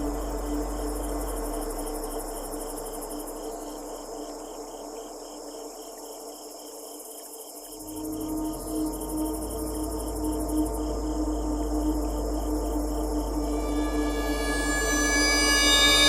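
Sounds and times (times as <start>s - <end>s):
low rumble: 0.0s - 6.0s, 7.8s - 16.0s
sustained droning tones: 0.0s - 6.2s, 7.7s - 16.0s
cricket-like pulsing: 0.0s - 16.0s
fast high shimmer: 13.4s - 16.0s.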